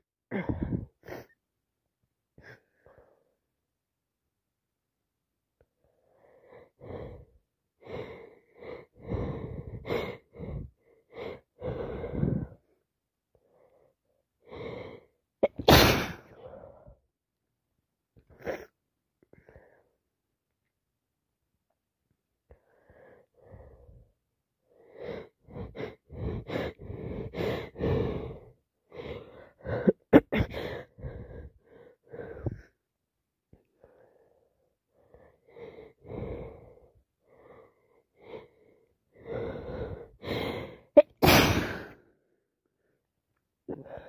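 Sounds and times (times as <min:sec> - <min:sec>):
gasping breaths: 0:05.8 - 0:12.8, 0:24.7 - 0:32.8, 0:33.6 - 0:41.0
woman sneezing: 0:15.4 - 0:16.2, 0:41.0 - 0:41.9
woman sniffing: 0:41.0 - 0:42.0.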